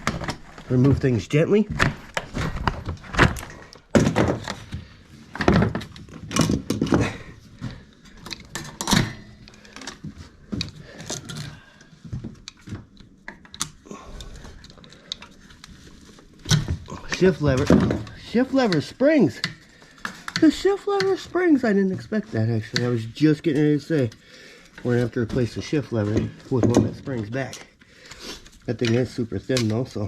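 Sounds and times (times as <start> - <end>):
parts and packaging knocking: 1.7 - 9.1, 16.4 - 18.4.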